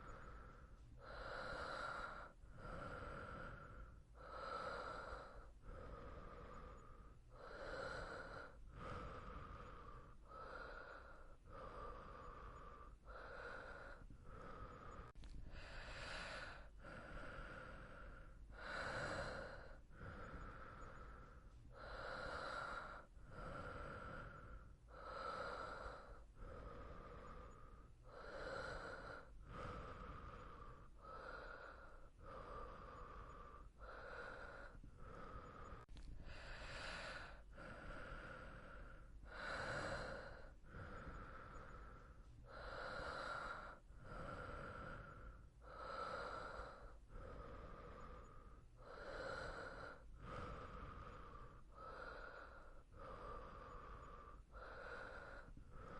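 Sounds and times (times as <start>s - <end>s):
person breathing softly: 0.0s - 55.9s.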